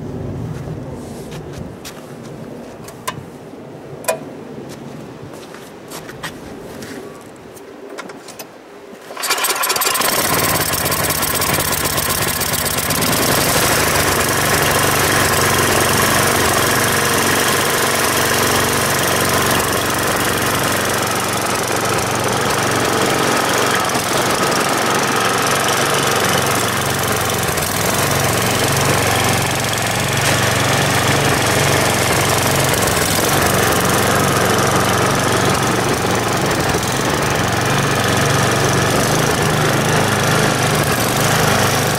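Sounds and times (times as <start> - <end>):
snowblower engine running: 9.1 - 41.9.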